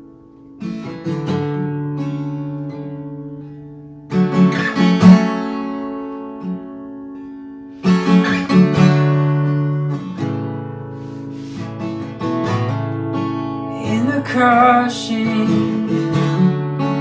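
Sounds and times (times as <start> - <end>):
acoustic guitar strumming chords: 0.0 - 17.0.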